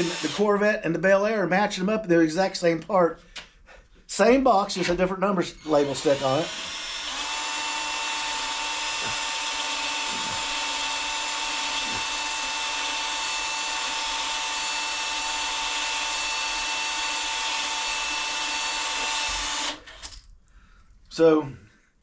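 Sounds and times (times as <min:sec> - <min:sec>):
electric drill whine: 0:00.0 - 0:00.4, 0:05.5 - 0:20.1.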